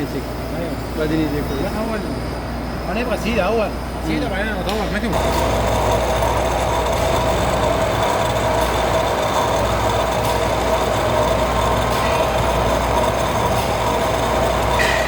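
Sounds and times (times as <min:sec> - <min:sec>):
metal lathe humming and whining: 0:00.0 - 0:15.0.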